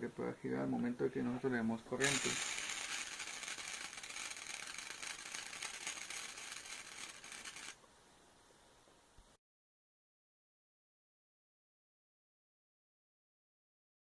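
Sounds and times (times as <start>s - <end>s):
electric motor spinning: 2.0s - 7.8s.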